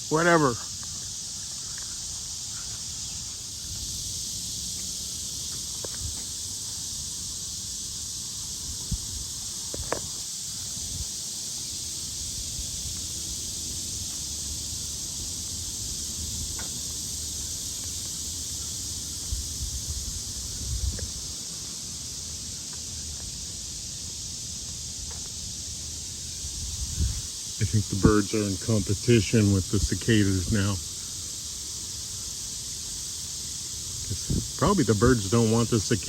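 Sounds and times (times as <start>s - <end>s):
cicada chorus: 0.0s - 36.0s.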